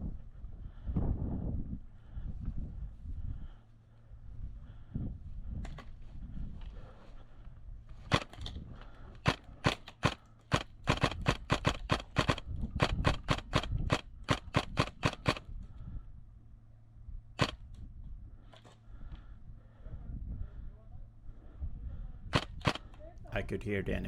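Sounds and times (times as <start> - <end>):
airsoft gun shots: 8.1 - 8.5, 9.2 - 15.4, 17.4 - 17.6, 22.3 - 23.0.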